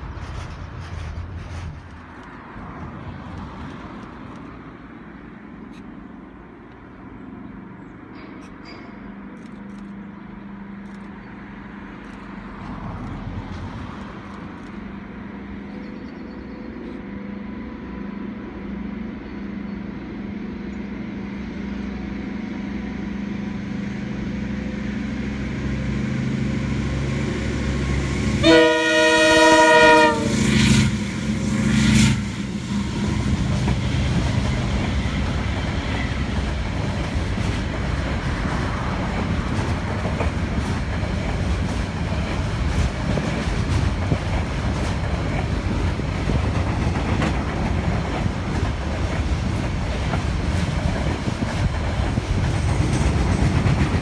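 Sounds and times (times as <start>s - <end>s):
train engine drone passing: 0.0s - 54.0s
train horn blast: 27.2s - 33.5s.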